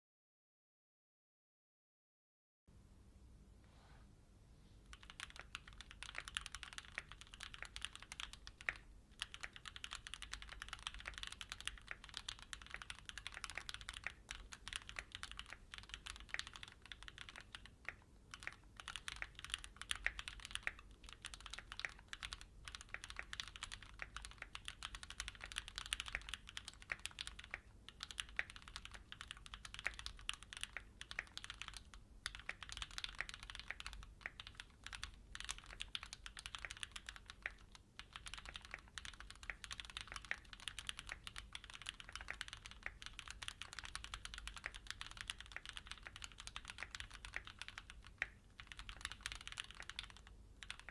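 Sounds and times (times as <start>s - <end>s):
fast mechanical keyboard typing: 4.9s - 50.9s.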